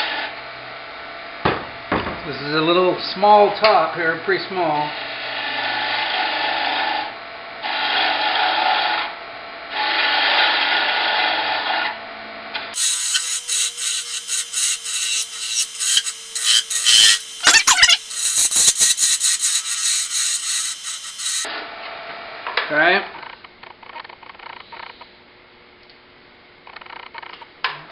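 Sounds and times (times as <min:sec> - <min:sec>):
hand tool scraping antler on lathe: 0:12.8 - 0:21.5
rapid clicking and scraping: 0:12.8 - 0:21.5.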